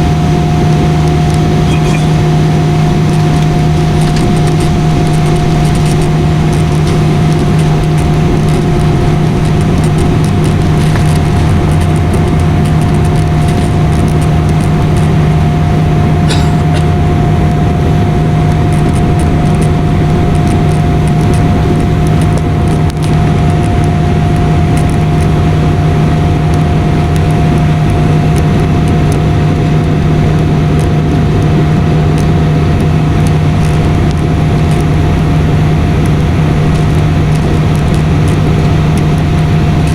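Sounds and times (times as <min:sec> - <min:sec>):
airliner cabin drone: 0:00.0 - 0:39.9
high steady tone: 0:01.6 - 0:02.5.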